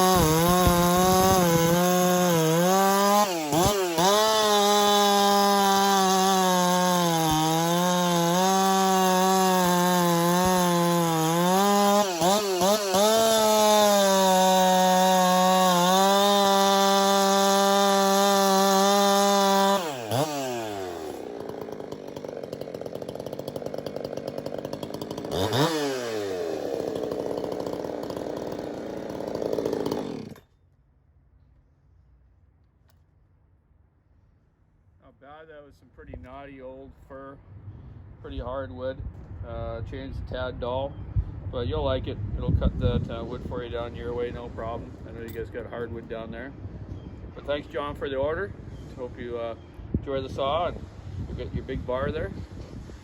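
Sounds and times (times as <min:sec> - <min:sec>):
chainsaw cutting wood: 0:00.0 - 0:30.6, 0:42.0 - 0:46.4, 0:47.4 - 0:53.0.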